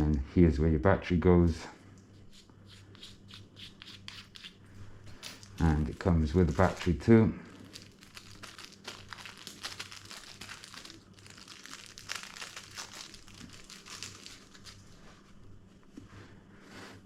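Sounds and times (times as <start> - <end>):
faint low hum: 0.0 - 17.0
plastic packaging crinkling: 5.2 - 15.0.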